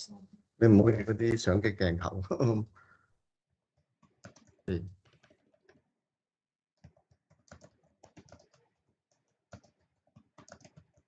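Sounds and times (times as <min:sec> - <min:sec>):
laptop keyboard typing: 0:04.1 - 0:05.9, 0:06.8 - 0:11.0.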